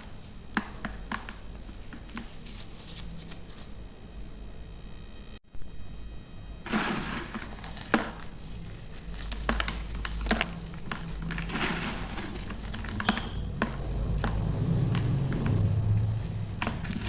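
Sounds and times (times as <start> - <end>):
baking soda crunching by hand: 6.6 - 17.0.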